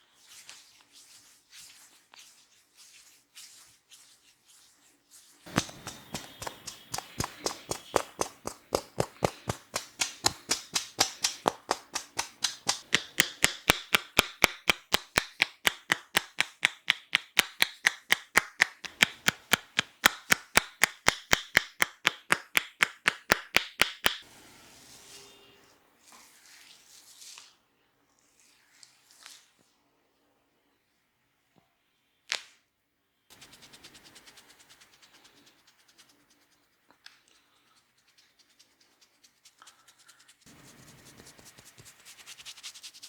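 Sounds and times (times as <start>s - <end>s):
soft rubbing: 0.0s - 15.0s, 33.3s - 43.0s
hands slapping in massage: 5.5s - 24.3s, 33.3s - 35.0s, 40.5s - 43.0s.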